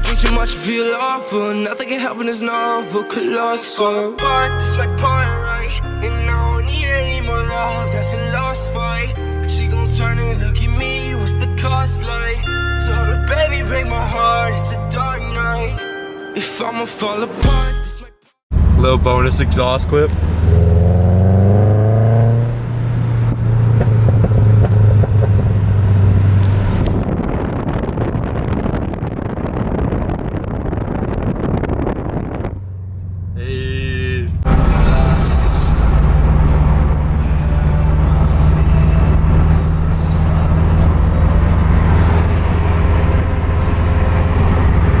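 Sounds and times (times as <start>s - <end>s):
car exhaust drone with crackles: 18.5s - 45.0s.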